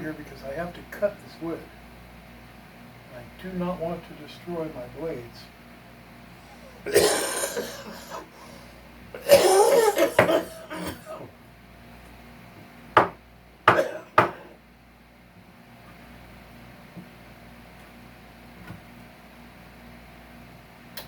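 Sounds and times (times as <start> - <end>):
tool knocking on wood: 13.0 - 14.4.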